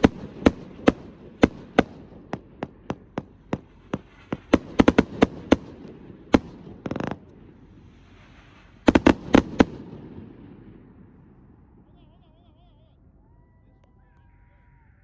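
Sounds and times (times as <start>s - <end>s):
fireworks bangs: 0.0s - 12.4s
firework hiss: 2.7s - 10.0s.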